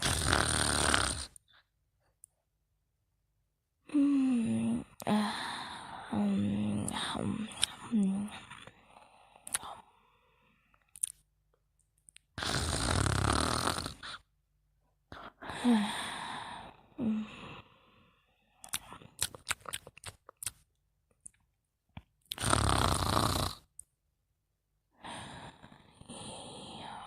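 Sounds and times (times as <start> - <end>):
person snoring loudly: 0.0 - 1.4, 12.4 - 14.2, 22.3 - 23.7
breathy sounds: 3.8 - 11.1, 15.1 - 19.4, 25.0 - 27.0.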